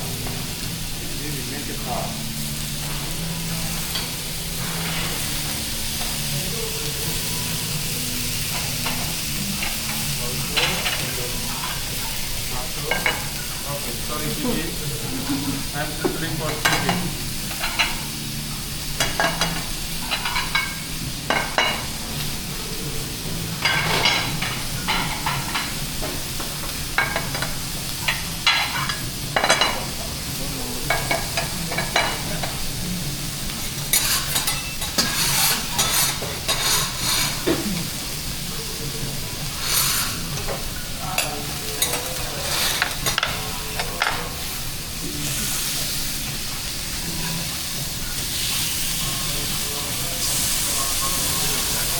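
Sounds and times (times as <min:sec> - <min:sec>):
food sizzling on a griddle: 0:00.0 - 0:51.9
metal spatulas scraping and clacking: 0:33.9 - 0:37.5, 0:41.2 - 0:44.2.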